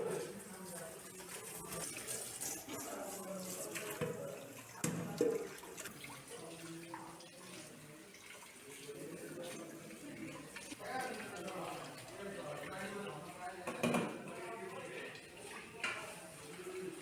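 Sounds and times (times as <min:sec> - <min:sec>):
tap water running into sink: 0:00.0 - 0:17.0.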